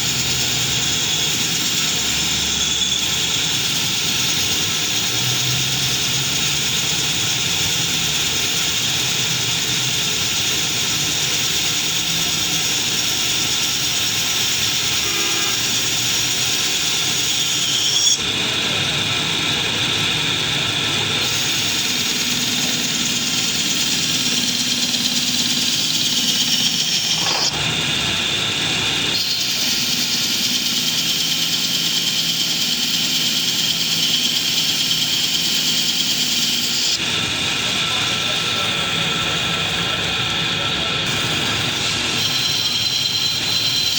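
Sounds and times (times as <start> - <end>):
lathe machine hum: 0.0 - 43.9.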